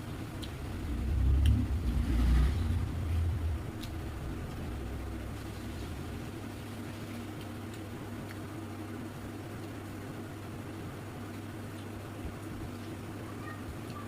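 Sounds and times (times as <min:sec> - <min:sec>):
low rumble: 0:00.0 - 0:07.4
faint steady hum: 0:00.0 - 0:14.0.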